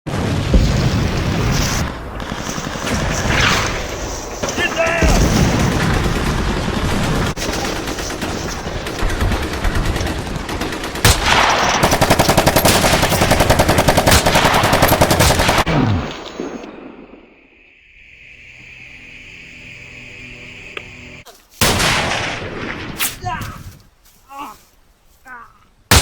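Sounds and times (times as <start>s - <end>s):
gunfire: 0.1s - 15.7s, 21.6s - 23.4s
machine-gun burst: 0.1s - 15.7s.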